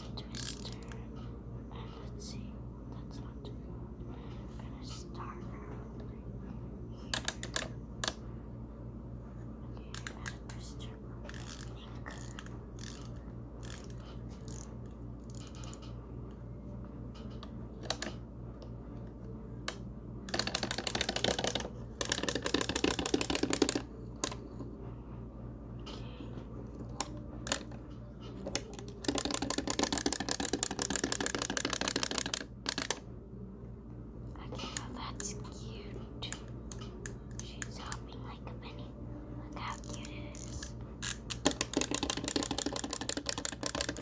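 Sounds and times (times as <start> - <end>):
clockwork toy clattering: 28.5 - 33.0, 41.4 - 44.0.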